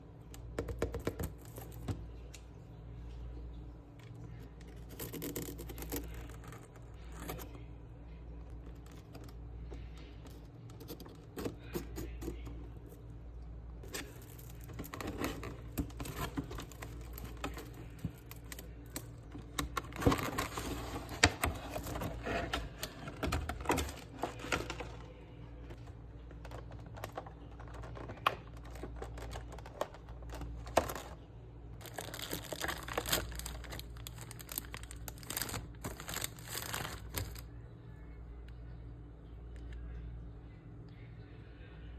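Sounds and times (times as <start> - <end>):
steady low hum: 0.0 - 41.9
packaging crinkling and tearing: 4.6 - 7.6, 13.8 - 25.1, 25.7 - 31.2, 31.8 - 37.5.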